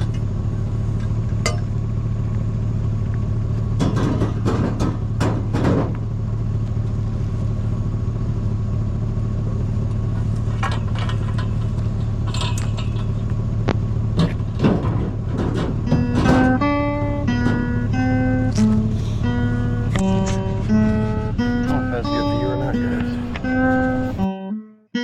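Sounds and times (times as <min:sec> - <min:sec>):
low vehicle rumble: 0:00.0 - 0:24.3
clicks and knocks: 0:10.6 - 0:21.7
plucked guitar music: 0:11.8 - 0:25.0.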